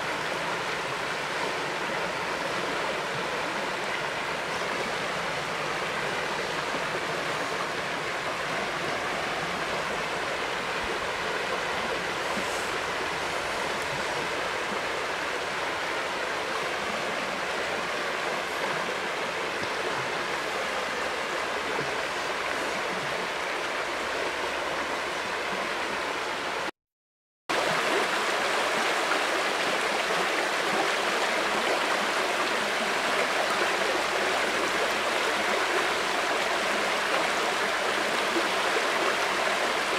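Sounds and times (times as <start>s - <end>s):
river water flowing: 0.0s - 26.7s, 27.5s - 39.9s.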